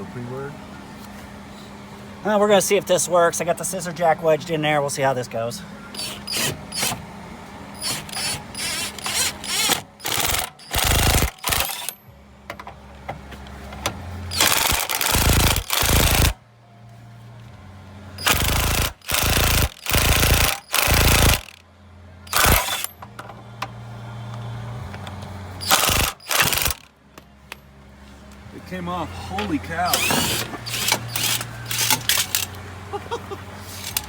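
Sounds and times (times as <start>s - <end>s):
impact wrench hammering: 14.3s - 16.4s, 18.2s - 21.6s, 22.3s - 23.0s.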